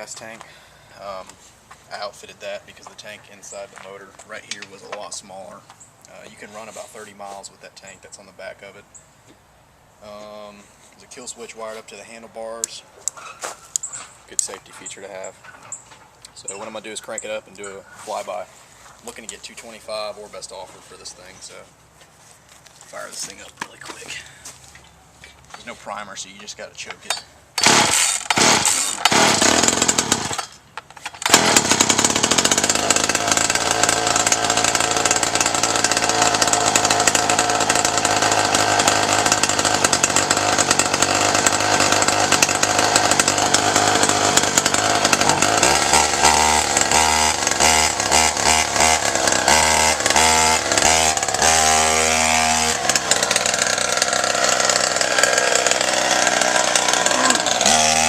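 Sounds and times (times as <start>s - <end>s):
chainsaw engine revving: 27.6s - 30.6s, 31.2s - 58.0s.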